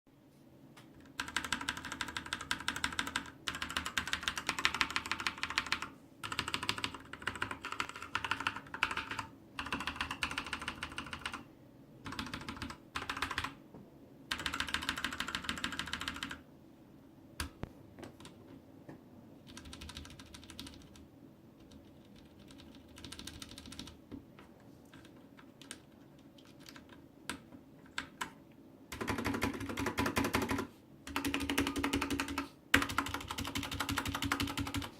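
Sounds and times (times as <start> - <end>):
mechanical keyboard typing: 1.0 - 11.4, 12.0 - 13.6, 14.3 - 16.4, 17.4 - 18.4, 19.4 - 24.0, 24.9 - 34.9.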